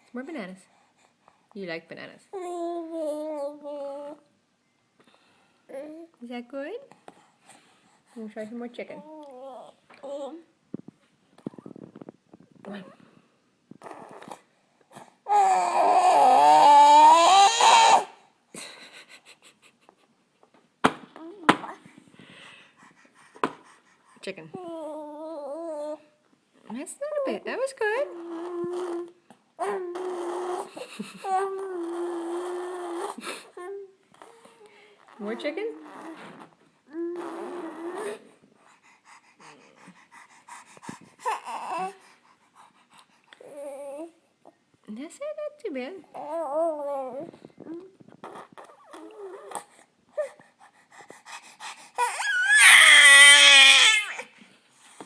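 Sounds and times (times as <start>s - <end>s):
baby fussing: 13.8s - 18.2s, 28.2s - 44.1s, 48.2s - 54.4s
baby crying angrily: 15.3s - 18.2s, 52.0s - 54.3s
baby smacking and breathing: 21.6s - 24.1s, 38.4s - 43.5s, 50.4s - 52.0s.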